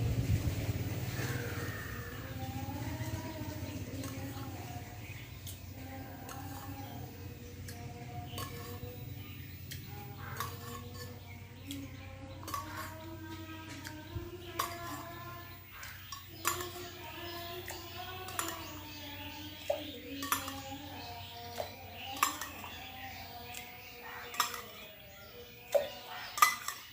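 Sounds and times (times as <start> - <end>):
spoon clinking against glass: 25.7 - 26.9.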